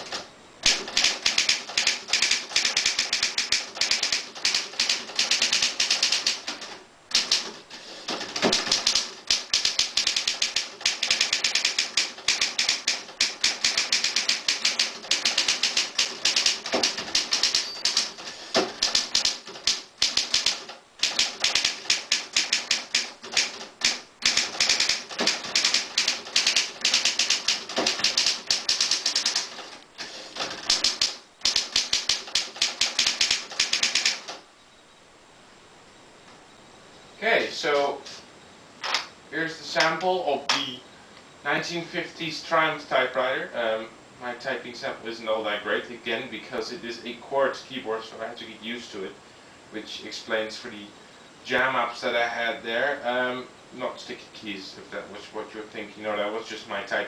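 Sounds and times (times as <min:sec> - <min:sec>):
manual typewriter typing: 0:00.0 - 0:34.4.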